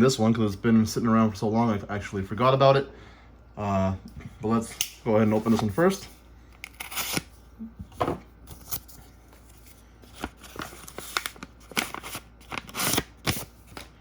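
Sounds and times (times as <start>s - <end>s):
paper and tape tearing: 6.7s - 7.3s, 10.2s - 13.8s.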